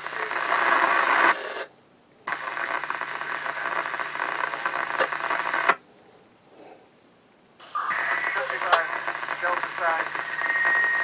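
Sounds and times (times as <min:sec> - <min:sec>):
radio static with hum: 0:00.0 - 0:01.7, 0:02.3 - 0:05.8, 0:07.6 - 0:11.0
radio squelch click: 0:02.3 - 0:05.8, 0:07.6 - 0:11.0.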